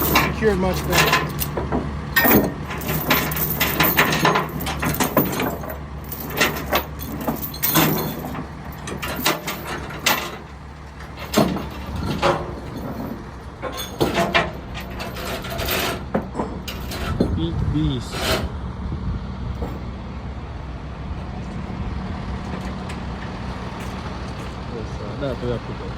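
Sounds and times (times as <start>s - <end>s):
metal chains clanking and rattling: 0.0s - 18.5s
vehicle engine idling: 0.0s - 25.9s.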